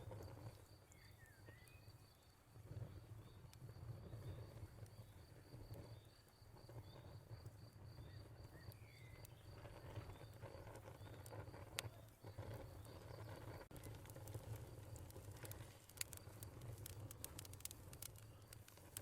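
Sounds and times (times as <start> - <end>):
cricket chirping: 0.0 - 19.0
wood fire crackling and popping: 0.0 - 19.0.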